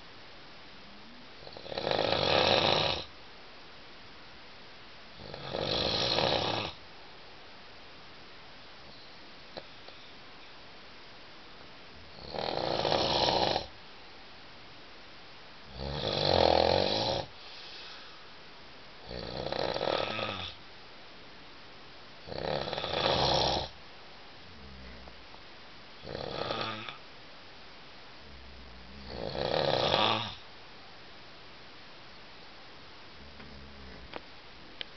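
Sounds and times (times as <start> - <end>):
man snoring loudly: 1.4 - 3.1, 5.2 - 6.8, 12.2 - 13.7, 15.7 - 17.3, 19.1 - 20.6, 22.3 - 23.8, 26.0 - 27.0, 28.3 - 30.4.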